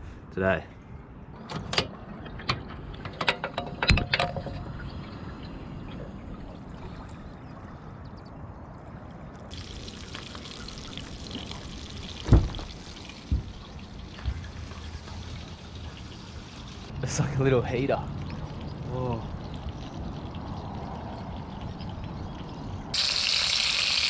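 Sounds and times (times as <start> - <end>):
sharp thump: 12.3 - 12.7.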